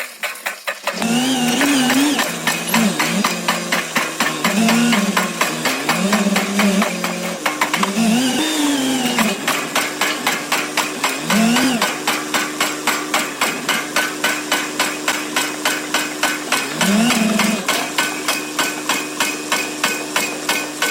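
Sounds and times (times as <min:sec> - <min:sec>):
pile driver hammering: 0:00.9 - 0:20.9.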